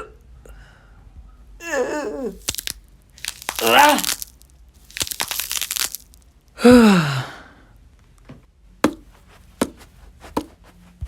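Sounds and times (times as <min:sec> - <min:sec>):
voiced sigh or groan: 0:01.6 - 0:02.4, 0:06.6 - 0:07.7.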